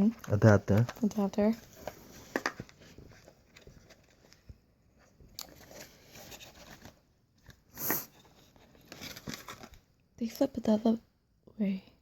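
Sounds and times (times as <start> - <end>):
packaging clicks and rustling: 0.0 - 4.5.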